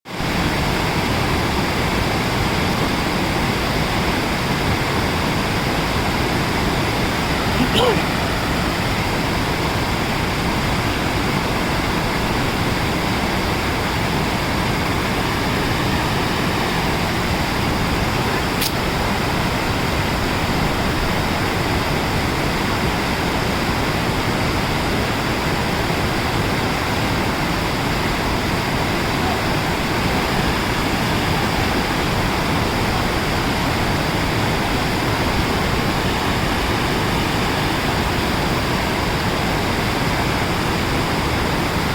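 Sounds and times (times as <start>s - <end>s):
stream rushing over rocks: 0.1s - 41.9s
brief click: 18.6s - 18.8s.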